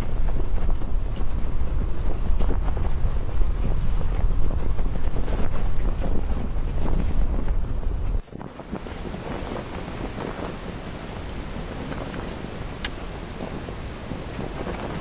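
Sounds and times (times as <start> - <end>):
light wind: 0.0 - 15.0
wind buffeting the microphone: 0.0 - 15.0
crickets trilling: 8.4 - 15.0.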